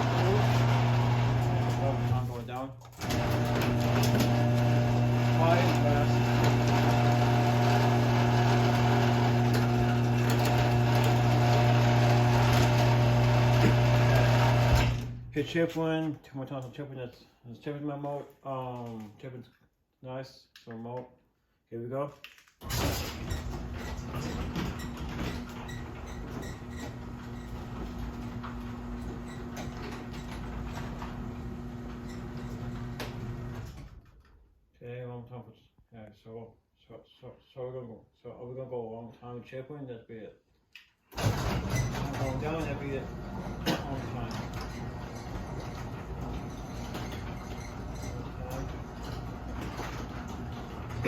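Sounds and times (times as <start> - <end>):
garage door opener motor humming: 0.0 - 15.3, 22.6 - 34.0, 41.2 - 51.0.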